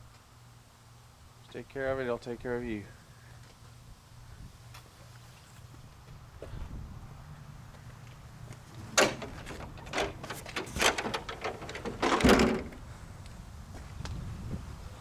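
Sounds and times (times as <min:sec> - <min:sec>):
rattling knocks and clunks: 0:08.5 - 0:13.0
truck door slamming: 0:08.6 - 0:13.0.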